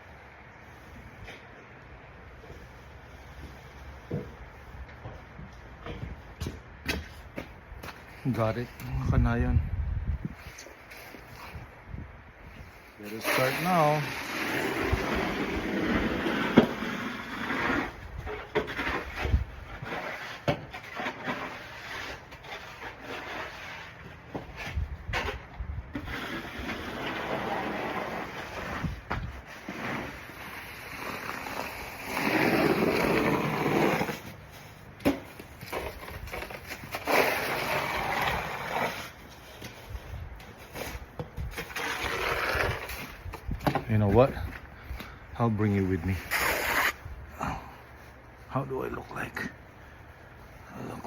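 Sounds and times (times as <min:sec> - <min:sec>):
knocks and short scrapes: 0:12.6 - 0:30.4
snow shovel scraping: 0:13.0 - 0:24.0, 0:26.0 - 0:34.5, 0:35.6 - 0:39.6, 0:40.7 - 0:43.3, 0:45.7 - 0:47.0.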